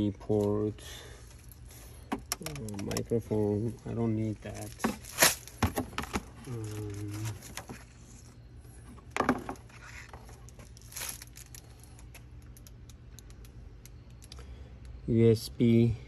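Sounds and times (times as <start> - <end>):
cables rustling: 9.0 - 14.4
small ticks: 12.0 - 15.0.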